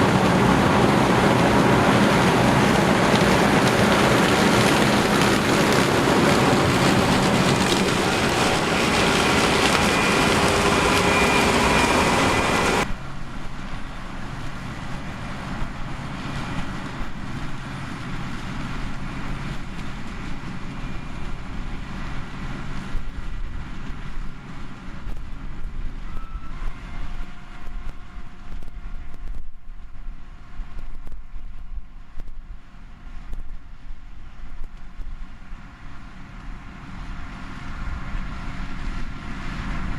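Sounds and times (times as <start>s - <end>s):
heavy farm machinery running: 0.0s - 25.0s
steady engine drone: 0.0s - 39.9s.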